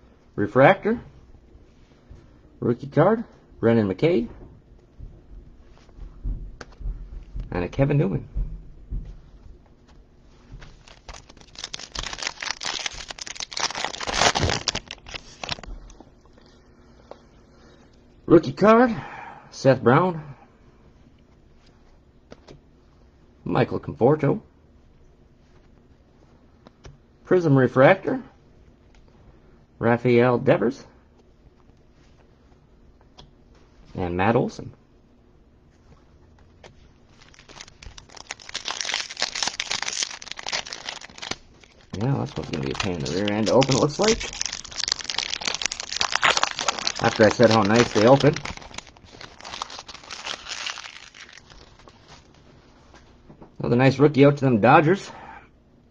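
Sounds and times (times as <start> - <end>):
foil wrapper crinkling and tearing: 10.7 - 15.8, 37.0 - 52.4.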